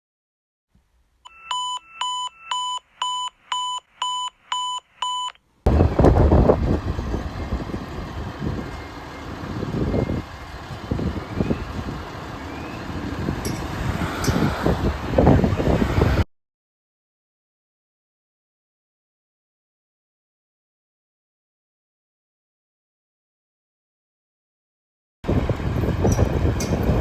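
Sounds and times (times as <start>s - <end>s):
electronic alarm beeps: 1.3s - 5.4s
low outdoor rumble: 5.7s - 16.2s, 25.3s - 27.0s.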